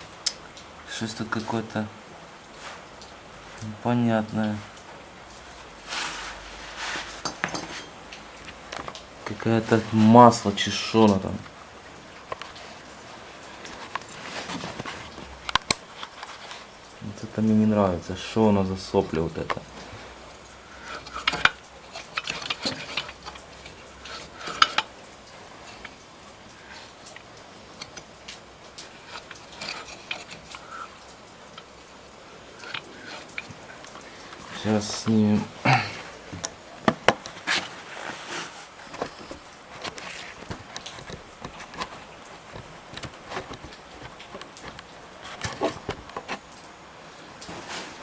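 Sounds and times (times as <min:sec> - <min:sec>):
metal tools clinking and scraping: 0:05.9 - 0:08.0, 0:20.7 - 0:25.0, 0:28.7 - 0:31.7, 0:32.5 - 0:35.5.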